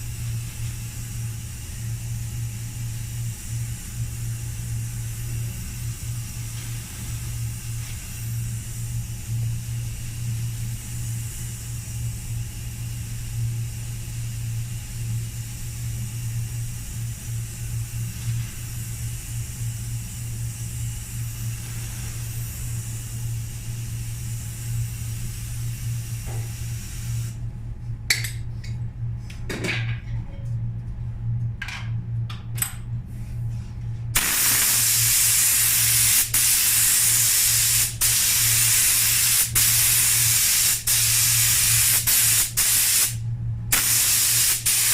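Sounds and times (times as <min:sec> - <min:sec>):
low hum with faint hiss: 0:00.0 - 0:44.9
paint spray gun hissing: 0:34.2 - 0:44.9.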